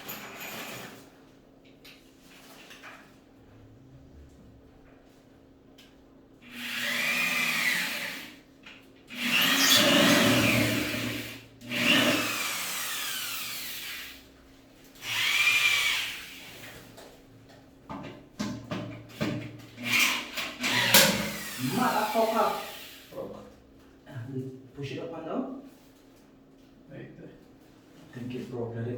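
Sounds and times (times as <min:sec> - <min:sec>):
power drill driving screws: 0:06.4 - 0:08.3, 0:09.1 - 0:14.2, 0:15.0 - 0:16.7, 0:19.8 - 0:23.1.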